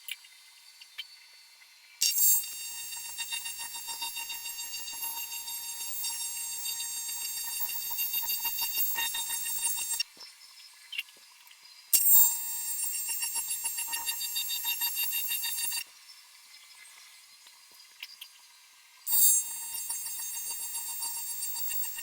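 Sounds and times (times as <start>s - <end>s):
welding arc buzzing: 2.2s - 10.0s.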